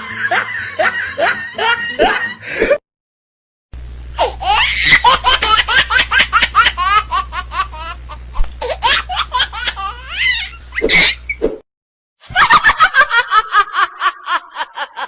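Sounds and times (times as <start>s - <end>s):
person laughing hard: 0.0s - 2.8s, 12.3s - 15.0s
steady low hum: 3.8s - 11.4s.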